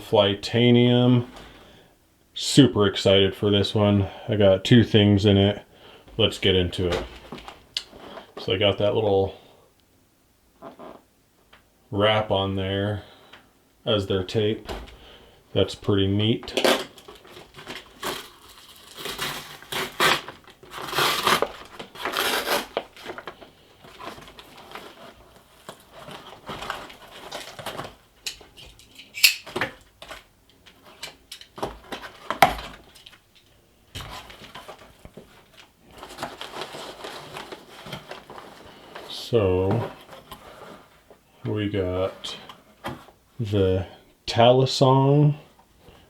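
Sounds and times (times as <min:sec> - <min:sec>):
packaging rustling and crinkling: 0:16.4 - 0:41.2
tape tearing: 0:16.5 - 0:28.5.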